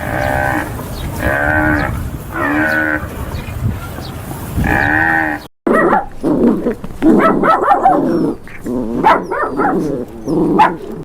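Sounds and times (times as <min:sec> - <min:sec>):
dog barking: 0:05.7 - 0:06.1, 0:07.1 - 0:08.2, 0:09.0 - 0:09.9, 0:10.6 - 0:10.9.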